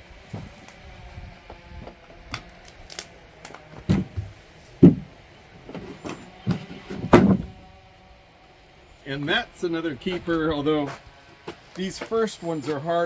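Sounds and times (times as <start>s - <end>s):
wooden boards knocking: 3.8s - 5.1s, 5.7s - 7.6s.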